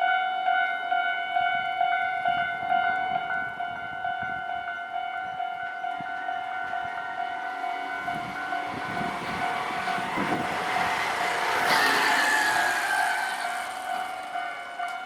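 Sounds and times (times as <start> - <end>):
level crossing warning bell ringing: 0.0 - 15.0
train rumbling: 5.2 - 15.0.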